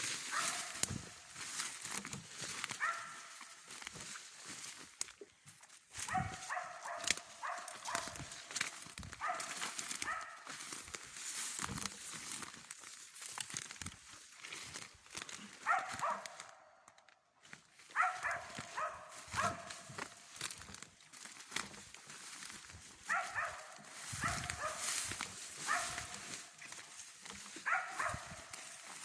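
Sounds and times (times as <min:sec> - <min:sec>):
twigs crackling: 0:00.0 - 0:29.0
dog barking: 0:00.3 - 0:01.1, 0:02.7 - 0:03.5, 0:06.0 - 0:10.5, 0:15.6 - 0:16.8, 0:17.9 - 0:19.9, 0:23.0 - 0:26.6, 0:27.6 - 0:28.8.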